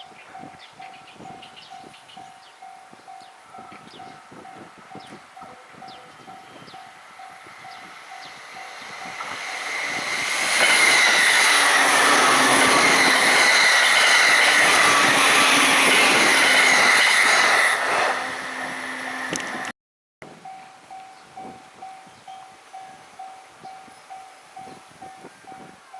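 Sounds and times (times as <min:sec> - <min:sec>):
level crossing warning bell: 0:00.0 - 0:16.0, 0:20.4 - 0:25.9
train passing at high speed: 0:00.0 - 0:19.7
train wheels on rails: 0:00.0 - 0:19.7.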